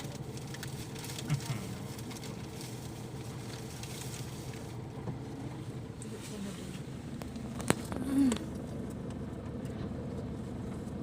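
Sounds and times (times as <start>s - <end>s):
light rattles and clicks: 0.0s - 6.5s
diesel engine running: 0.0s - 11.0s.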